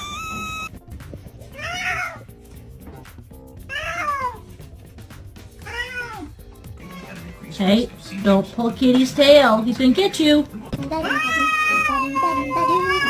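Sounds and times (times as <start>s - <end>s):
cat meowing: 0.0s - 0.7s, 1.5s - 2.3s, 3.7s - 4.4s, 5.6s - 7.2s, 10.8s - 13.0s.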